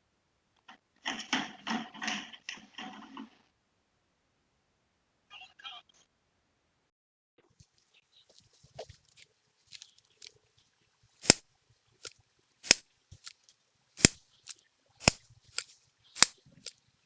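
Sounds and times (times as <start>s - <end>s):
faint clicks and rustling: 0.5s - 3.6s, 7.4s - 17.0s
loud sharp cracks: 11.2s - 16.9s.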